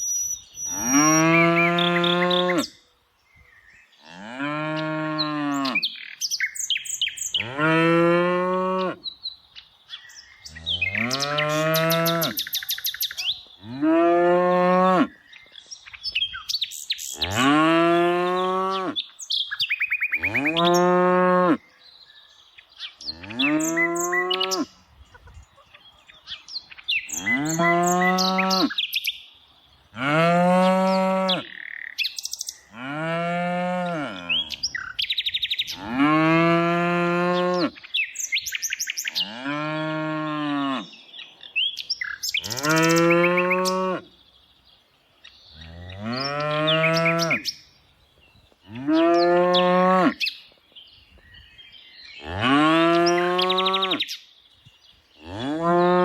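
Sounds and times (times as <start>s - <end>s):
cattle mooing: 10.6s - 12.4s, 27.2s - 28.7s.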